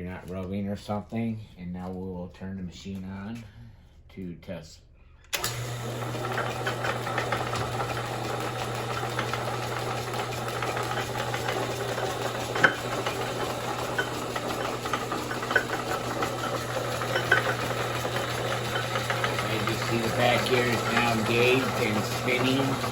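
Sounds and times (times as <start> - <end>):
lathe motor hum: 5.4 - 22.9.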